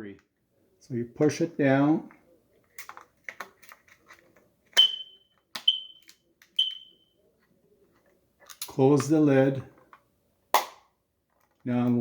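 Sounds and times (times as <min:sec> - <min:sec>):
smoke alarm high chirps: 0:04.8 - 0:07.1.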